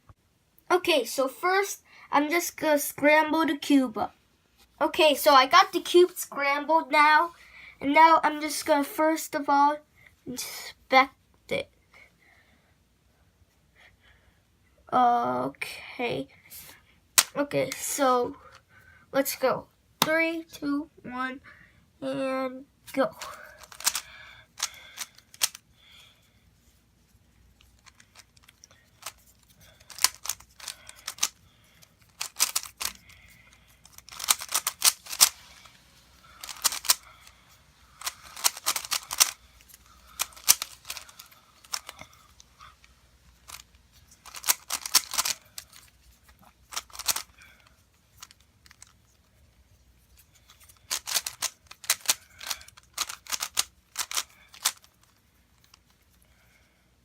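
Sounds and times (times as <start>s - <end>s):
puzzle cube clicking: 23.2s - 25.6s, 27.7s - 33.1s, 33.8s - 35.6s, 36.4s - 37.3s, 38.0s - 42.4s, 43.4s - 46.0s, 46.6s - 47.6s, 50.5s - 55.0s.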